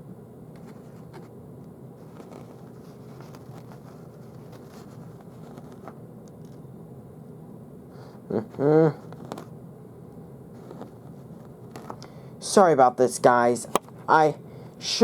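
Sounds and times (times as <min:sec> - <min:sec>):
low background hum: 0:00.0 - 0:15.0
faint clicks and handling noises: 0:00.5 - 0:06.6, 0:09.1 - 0:09.5, 0:10.6 - 0:12.1.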